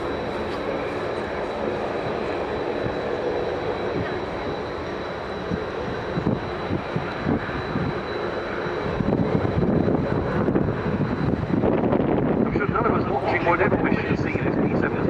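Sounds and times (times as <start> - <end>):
aircraft radial engines in flight: 0.0 - 15.0.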